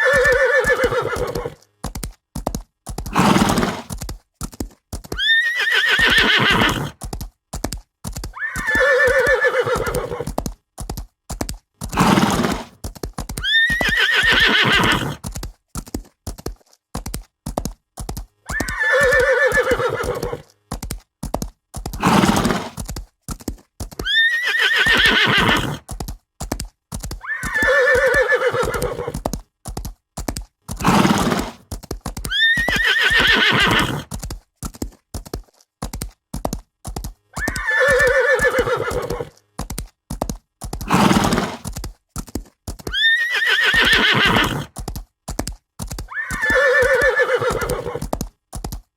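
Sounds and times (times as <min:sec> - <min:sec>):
horse neighing: 0:00.0 - 0:01.6, 0:03.1 - 0:03.9, 0:05.2 - 0:07.0, 0:08.4 - 0:10.4, 0:11.9 - 0:12.7, 0:13.4 - 0:15.2, 0:18.5 - 0:20.5, 0:22.0 - 0:22.8, 0:24.0 - 0:25.8, 0:27.2 - 0:29.2, 0:30.8 - 0:31.6, 0:32.3 - 0:34.1, 0:37.4 - 0:39.3, 0:40.9 - 0:41.6, 0:42.9 - 0:44.7, 0:46.1 - 0:48.1
clip-clop of hooves: 0:00.0 - 0:48.9
horse snorting: 0:03.0 - 0:04.0, 0:05.6 - 0:07.0, 0:11.8 - 0:12.8, 0:13.8 - 0:15.3, 0:21.9 - 0:22.8, 0:24.6 - 0:25.9, 0:30.8 - 0:31.7, 0:32.3 - 0:34.1, 0:40.8 - 0:41.8, 0:42.9 - 0:44.8.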